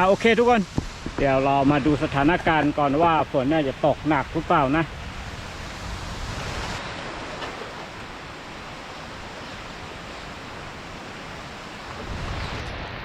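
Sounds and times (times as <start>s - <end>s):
rainstorm: 0.0s - 13.0s
strong wind: 0.0s - 13.0s.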